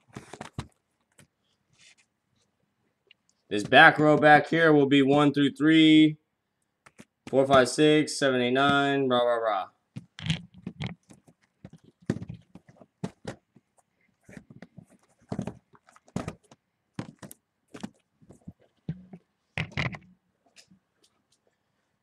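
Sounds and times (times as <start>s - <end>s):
cardboard boxes thunking and scraping: 11.7s - 13.5s, 14.2s - 19.1s.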